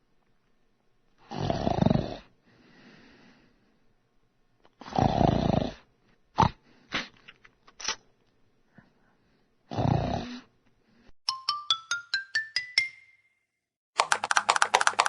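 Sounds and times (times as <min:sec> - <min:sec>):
person snoring: 0:01.2 - 0:02.3, 0:04.8 - 0:06.6, 0:09.7 - 0:10.5
snort-like sounds: 0:01.2 - 0:02.4, 0:04.7 - 0:07.3, 0:09.6 - 0:10.6.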